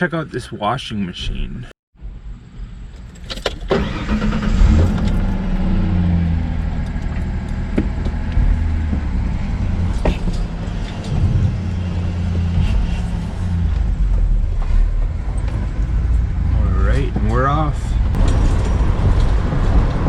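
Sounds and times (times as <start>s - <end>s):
vehicle engine idling: 3.9s - 19.7s.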